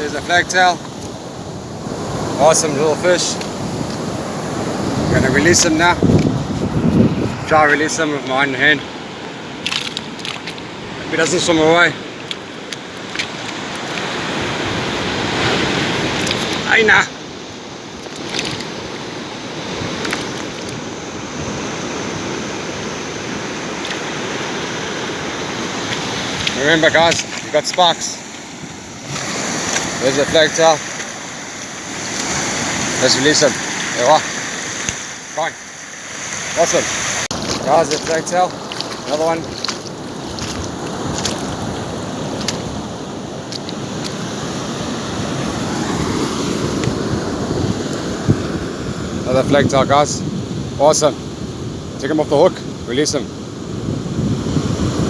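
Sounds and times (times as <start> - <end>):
surf breaking on beach: 0.0 - 55.0
wind on microphone: 0.9 - 8.2, 36.8 - 55.0.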